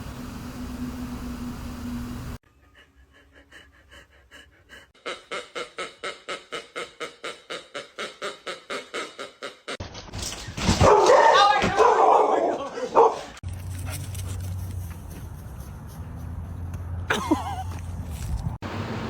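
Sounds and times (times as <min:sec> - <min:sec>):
fast rhythmic panting: 0:02.5 - 0:09.2.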